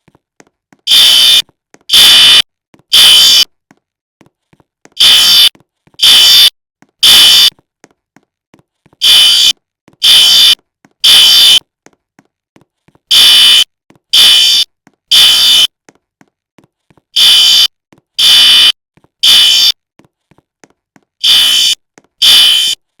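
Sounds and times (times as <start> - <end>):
fire alarm beeps: 0.9 - 3.5, 5.0 - 7.5, 9.0 - 11.6, 13.1 - 15.7, 17.2 - 19.8, 21.2 - 22.8.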